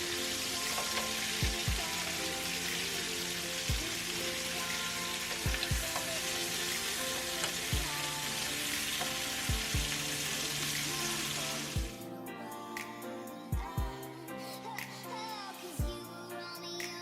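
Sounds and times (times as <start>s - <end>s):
ribs sizzling in a hot pan: 0.0s - 11.9s
music with a beat: 0.0s - 17.0s.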